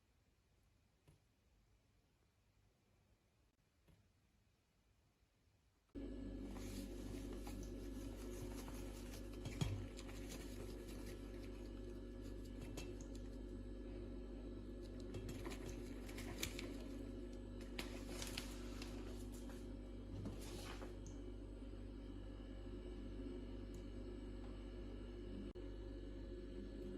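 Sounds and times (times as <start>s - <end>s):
steady low hum: 5.9s - 26.9s.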